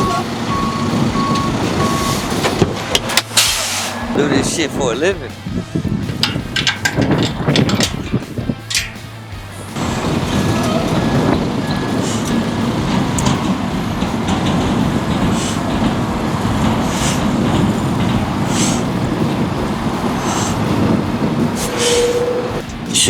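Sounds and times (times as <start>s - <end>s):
metallic rumbling and grinding: 0.0s - 23.0s
faint metal clanks: 6.1s - 9.2s.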